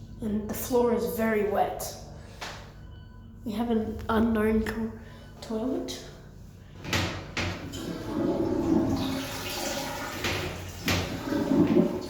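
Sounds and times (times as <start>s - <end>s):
toilet flushing: 7.4s - 12.0s.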